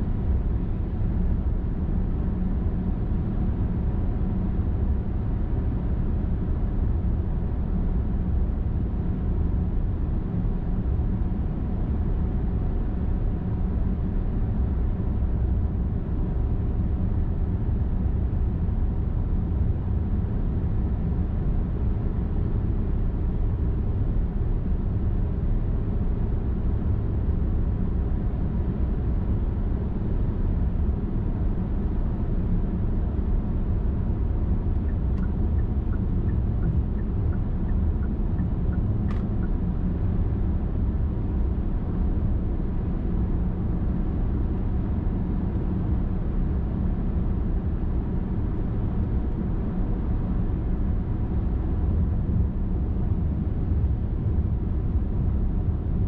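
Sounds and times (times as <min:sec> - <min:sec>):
car driving on highway: 0:13.2 - 0:56.0.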